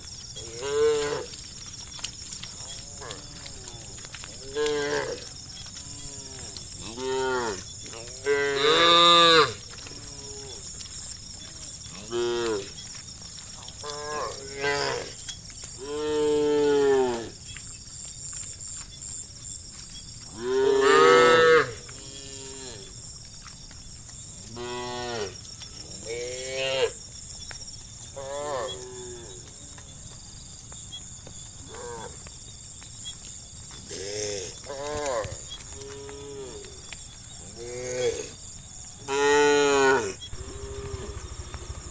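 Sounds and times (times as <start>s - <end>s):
cows mooing: 39.2s - 41.9s.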